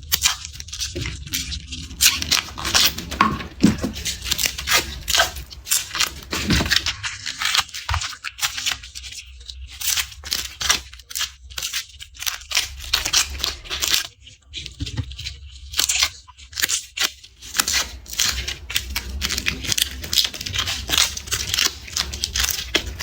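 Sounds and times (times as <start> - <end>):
garlic skin crackling and tearing: 0.0 - 14.1, 15.0 - 23.0.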